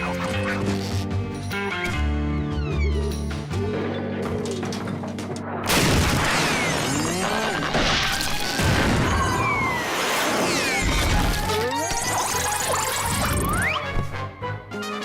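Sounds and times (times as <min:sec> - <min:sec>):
cartoon music: 0:10.8 - 0:15.0.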